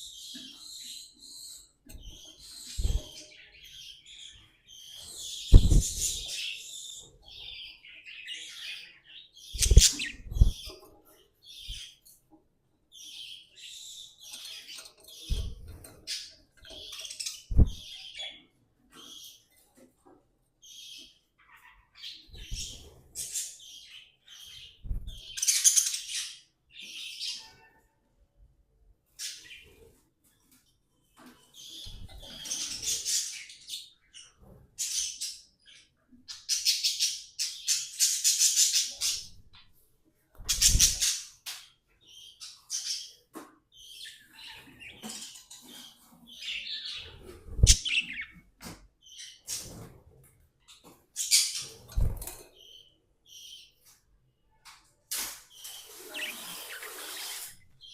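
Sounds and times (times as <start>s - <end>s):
budgerigars chirping: 9.5s - 10.7s, 46.4s - 48.4s, 55.6s - 57.9s.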